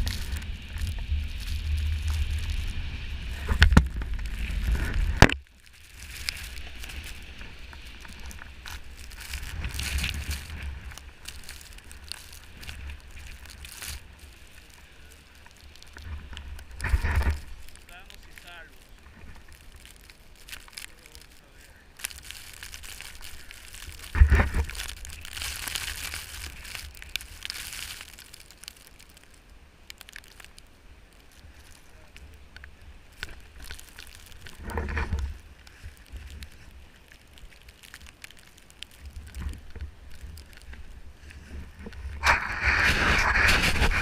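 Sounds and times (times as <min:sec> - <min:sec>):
snowboard sliding over snow: 0:00.0 - 0:20.3, 0:22.4 - 0:28.4, 0:39.0 - 0:44.0
wind rumbling on microphone: 0:00.0 - 0:44.0.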